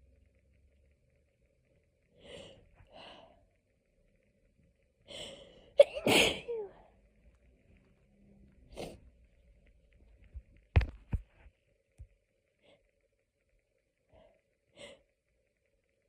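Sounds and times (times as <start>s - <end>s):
person sneezing: 5.8s - 6.8s.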